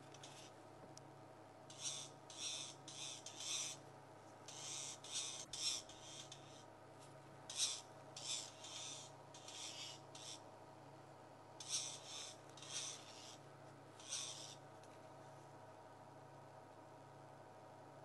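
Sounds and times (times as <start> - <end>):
birds giving rasping alarm calls: 0.0 - 0.5, 1.6 - 3.8, 4.4 - 6.7, 7.4 - 10.5, 11.6 - 13.4, 14.0 - 14.6
steady low hum: 0.0 - 18.0.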